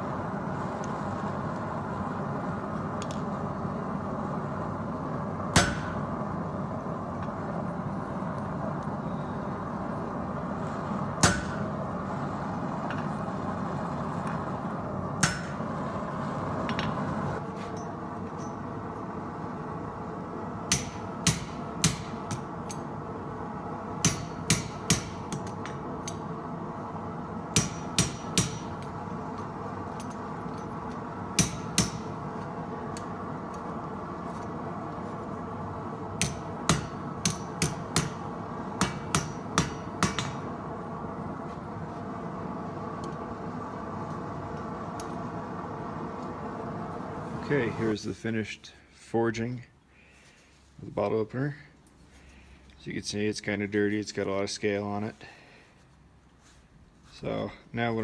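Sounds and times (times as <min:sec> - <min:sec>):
steady background noise: 0:00.0 - 0:58.0
hammer striking steel on anvil: 0:05.5 - 0:06.2, 0:11.2 - 0:11.8, 0:15.2 - 0:15.7, 0:20.7 - 0:22.9, 0:24.0 - 0:26.2, 0:27.5 - 0:29.0, 0:31.4 - 0:32.2, 0:36.2 - 0:40.5.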